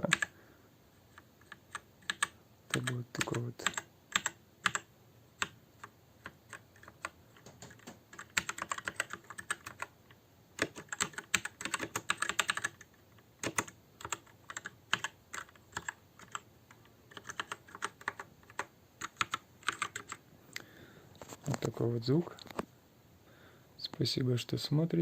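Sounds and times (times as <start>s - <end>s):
mechanical keyboard typing: 0.0s - 0.3s, 1.1s - 10.0s, 10.6s - 20.2s.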